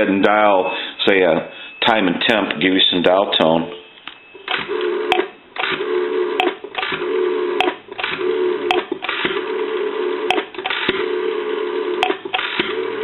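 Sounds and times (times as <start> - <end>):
dial clicks: 4.0 - 9.4, 10.3 - 11.1, 11.8 - 13.0
rotary phone dial whirring: 4.4 - 13.0.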